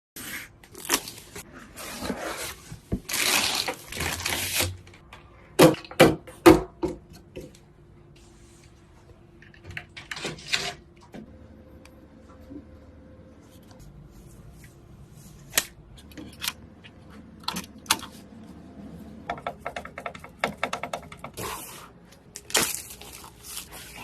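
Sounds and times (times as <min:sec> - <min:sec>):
computer parts clicking and knocking: 0:05.1 - 0:07.6, 0:19.2 - 0:21.4.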